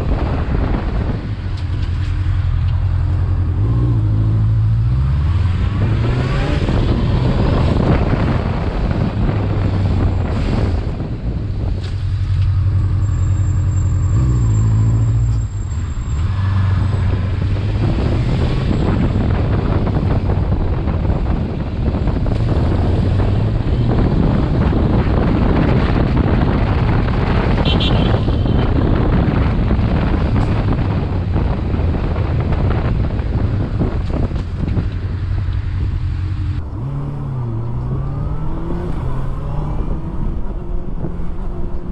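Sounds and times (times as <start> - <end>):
wind buffeting microphone: 0.0 - 13.0, 15.6 - 41.9
motorcycle engine shifting gears: 29.0 - 41.9.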